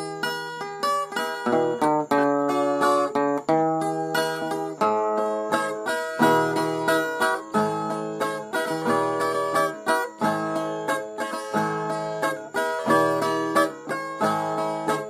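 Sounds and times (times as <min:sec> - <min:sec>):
folk guitar picking: 0:00.0 - 0:15.0.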